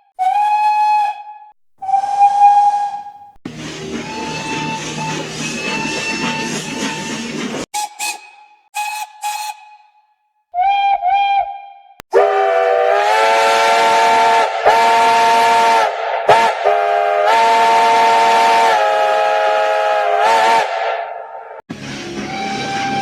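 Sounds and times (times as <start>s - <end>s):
steam hissing: 1.8s - 8.2s, 21.7s - 23.0s
steam locomotive whistle: 1.8s - 9.9s, 12.1s - 23.0s.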